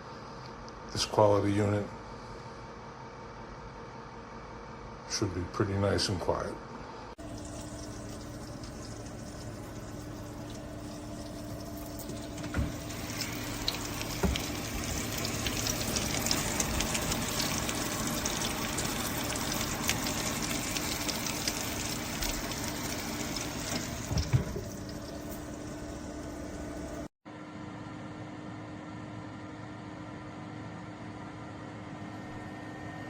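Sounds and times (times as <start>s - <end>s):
air fryer fan rushing: 7.2s - 27.1s
low motor hum: 7.2s - 27.1s.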